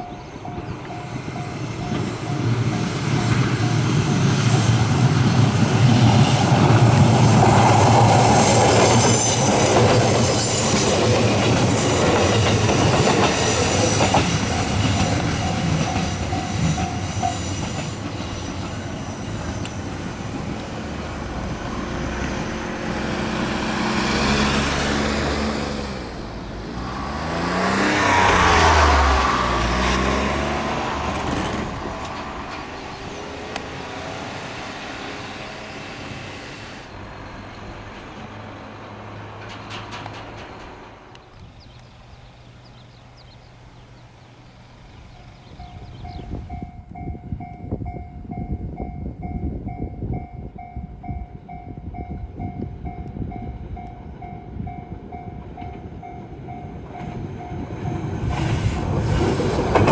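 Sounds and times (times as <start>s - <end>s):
crossing warning bell ringing: 0.0s - 5.1s, 8.2s - 27.1s, 45.1s - 58.2s
electric train passing: 0.0s - 59.9s
high wheel squeal: 7.2s - 25.9s
road vehicle engine passing: 18.4s - 46.5s.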